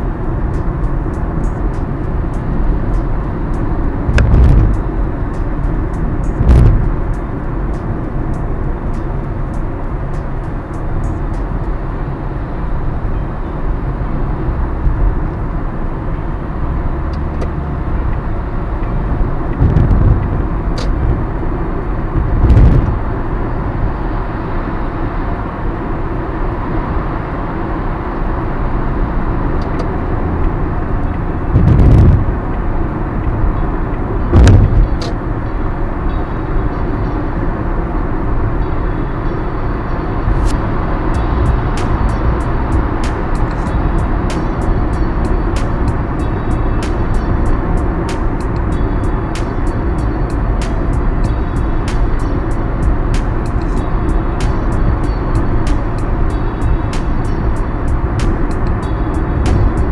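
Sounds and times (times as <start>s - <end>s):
car cabin road rumble: 0.0s - 59.9s.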